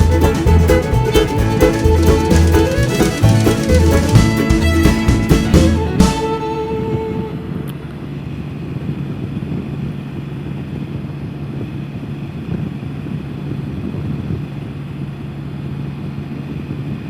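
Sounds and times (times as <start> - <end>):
motorcycle engine cruising: 0.0 - 10.0
wind and road rush: 0.0 - 17.0.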